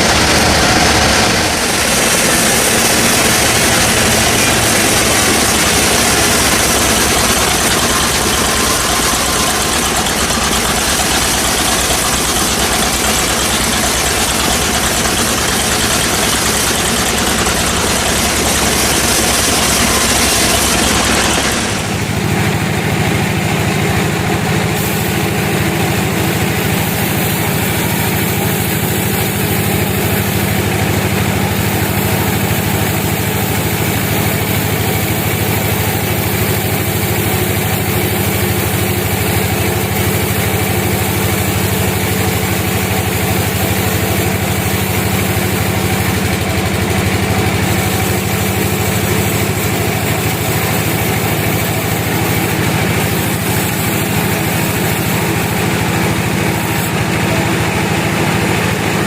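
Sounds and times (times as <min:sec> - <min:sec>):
sawmill machinery drone: 0:00.0 - 0:59.0
steady machine hiss: 0:00.0 - 0:59.0.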